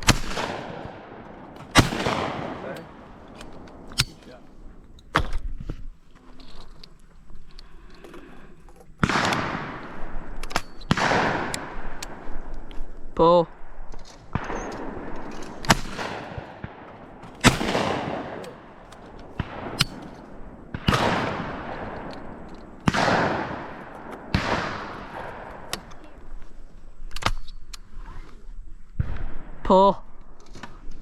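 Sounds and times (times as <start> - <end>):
shotgun shots echoing: 0.0 - 5.4, 9.0 - 26.7.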